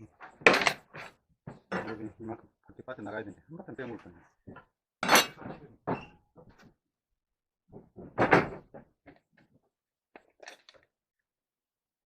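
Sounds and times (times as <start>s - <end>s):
wood or tools knocking: 7.7s - 9.3s.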